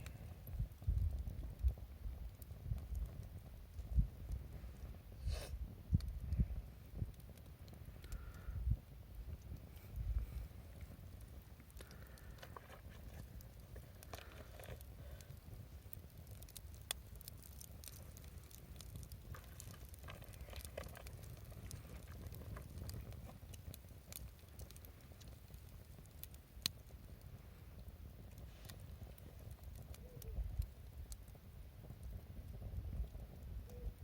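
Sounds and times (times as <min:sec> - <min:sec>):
steady low rumble: 0:00.0 - 0:16.2
bonfire crackling: 0:00.0 - 0:34.0
sharp fire pops: 0:00.0 - 0:34.0.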